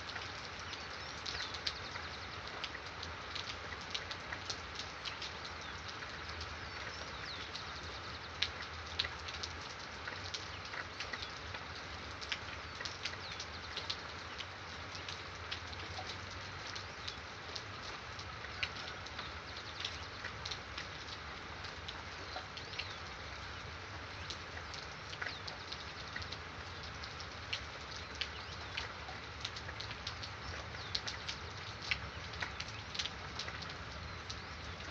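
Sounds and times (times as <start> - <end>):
rain drops ticking: 0.0 - 34.9
rain hiss: 0.0 - 34.9.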